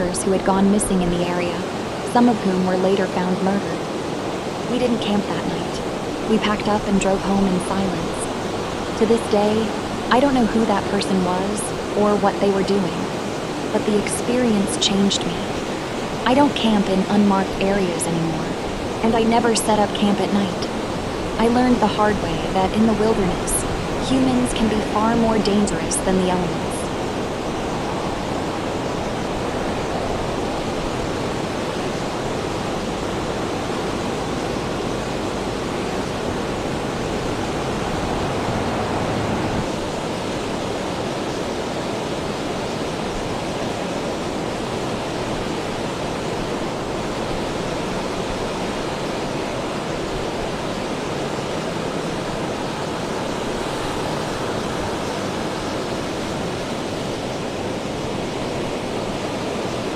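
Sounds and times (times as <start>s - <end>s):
heavy rain falling: 0.0s - 59.9s.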